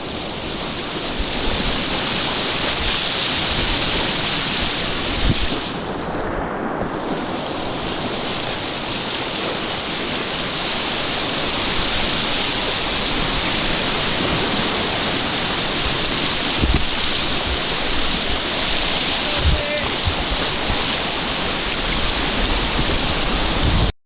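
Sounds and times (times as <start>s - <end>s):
stream water rushing: 0.0s - 6.0s, 7.0s - 23.9s
low bumps: 16.5s - 23.9s.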